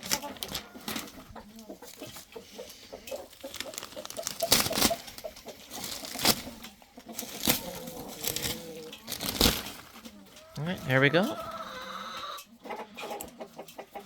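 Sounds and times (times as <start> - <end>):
hens clucking: 0.0 - 14.0
wood shavings rustling: 3.1 - 11.4.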